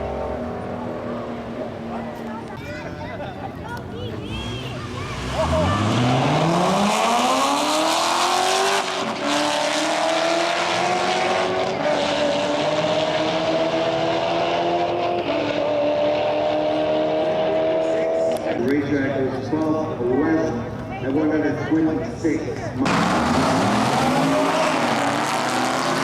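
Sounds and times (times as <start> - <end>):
drag racing car accelerating: 4.4 - 26.0.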